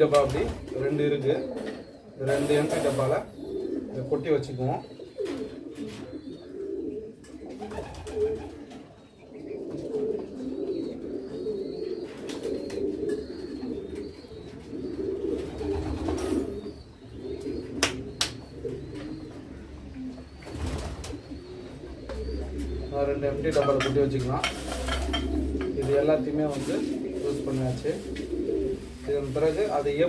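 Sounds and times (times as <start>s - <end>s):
pigeons cooing: 0.0s - 30.0s.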